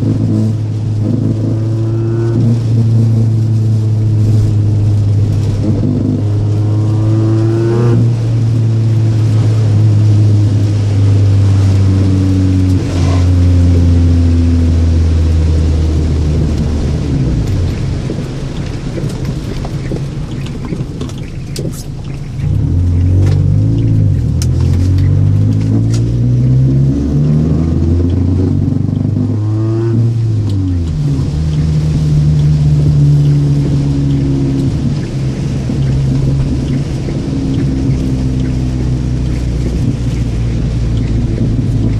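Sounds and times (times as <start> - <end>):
car engine revving: 0.0 - 41.9.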